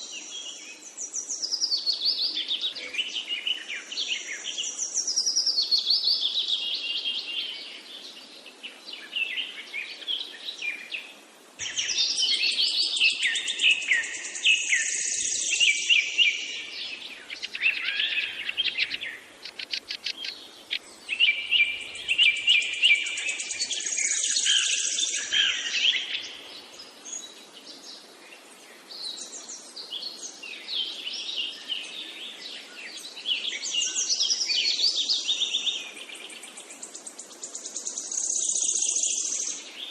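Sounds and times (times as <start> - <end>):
birds chirping and singing: 11.6 - 28.0.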